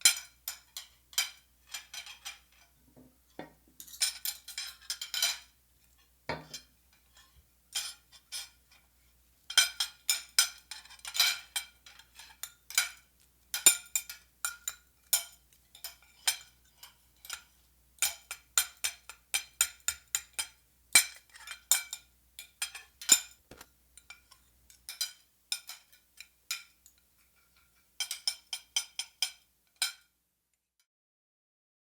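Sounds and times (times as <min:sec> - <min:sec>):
metal utensils clinking on glass: 0:03.8 - 0:05.5.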